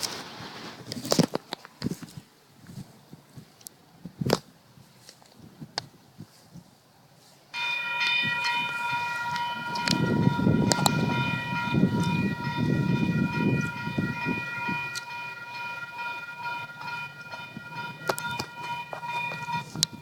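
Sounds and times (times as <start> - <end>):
low train rumble: 6.9 - 20.0
locomotive air horn: 7.6 - 20.0.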